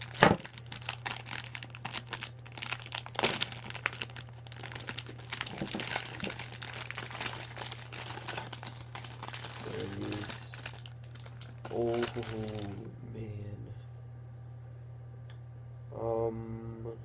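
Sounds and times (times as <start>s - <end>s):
packaging crinkling: 0.0s - 12.9s
steady low hum: 0.0s - 17.0s.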